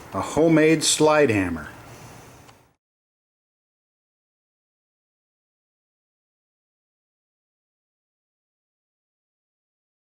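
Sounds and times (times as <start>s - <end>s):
faint room noise: 0.0s - 2.8s.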